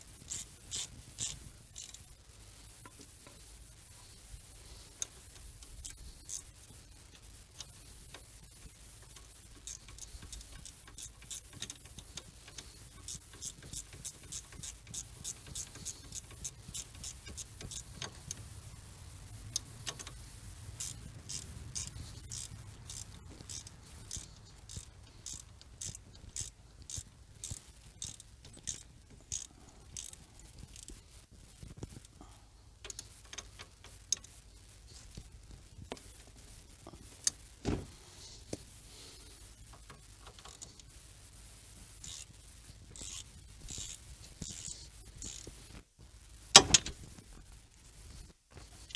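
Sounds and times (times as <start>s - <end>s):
ratchet wrench clicking: 0.2s - 2.1s, 4.8s - 6.5s, 7.1s - 31.0s, 32.8s - 34.4s, 42.0s - 42.3s, 43.0s - 45.6s, 46.6s - 47.0s.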